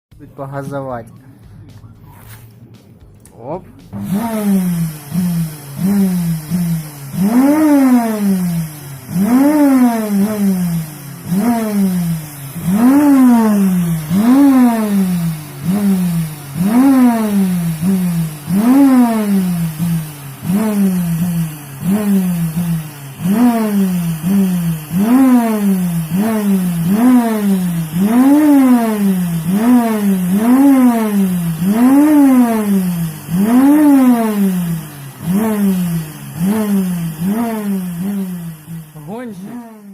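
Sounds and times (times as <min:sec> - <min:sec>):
vacuum cleaner motor surging: 0:04.0 - 0:39.9.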